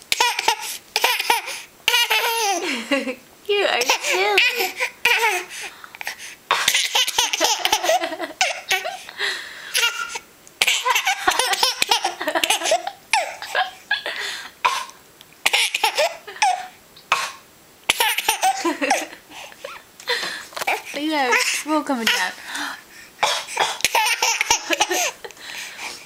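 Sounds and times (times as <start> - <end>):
baby laughing: 0.1 - 2.8, 3.8 - 5.5, 6.7 - 9.1, 9.7 - 14.0, 15.4 - 16.7, 17.9 - 19.8, 23.6 - 25.3.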